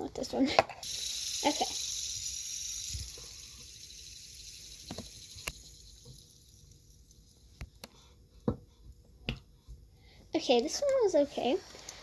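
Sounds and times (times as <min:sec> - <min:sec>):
fidget spinner whirring: 0:00.6 - 0:09.2
small clicks: 0:00.8 - 0:08.0.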